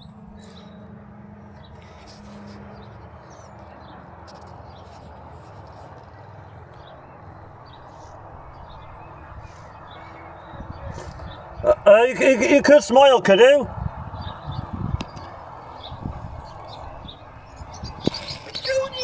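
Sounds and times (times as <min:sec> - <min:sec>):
outdoor ambient hiss: 0:07.4 - 0:19.0
faint bird chirps: 0:13.8 - 0:19.0.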